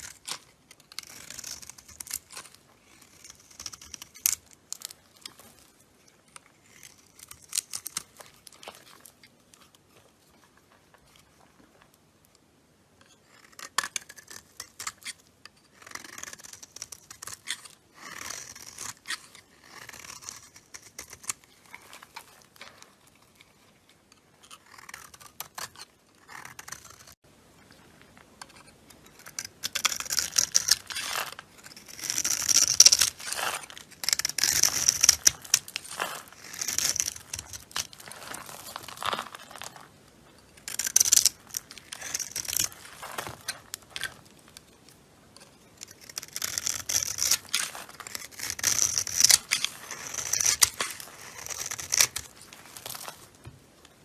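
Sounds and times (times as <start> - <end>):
blade cutting into soap: 0.0 - 9.2, 13.0 - 23.4, 24.1 - 27.2, 28.5 - 39.8, 45.4 - 53.5.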